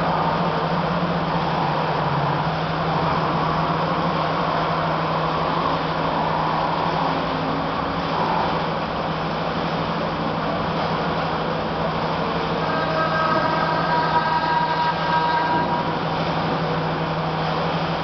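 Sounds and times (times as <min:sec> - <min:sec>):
cnc router hum and hiss: 0:00.0 - 0:18.0
faint high drifting tone: 0:12.2 - 0:17.4.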